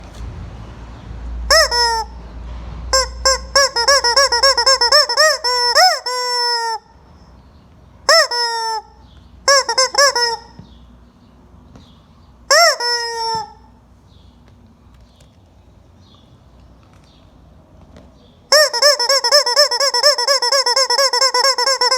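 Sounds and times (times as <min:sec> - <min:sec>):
chicken cackling: 0:01.5 - 0:02.2, 0:02.9 - 0:07.0, 0:08.1 - 0:10.6, 0:12.5 - 0:13.7, 0:18.5 - 0:21.9.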